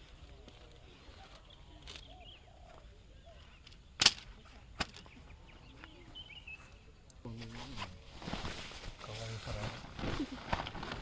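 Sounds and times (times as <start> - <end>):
camping gear clacking: 3.5 - 6.0, 7.3 - 11.0.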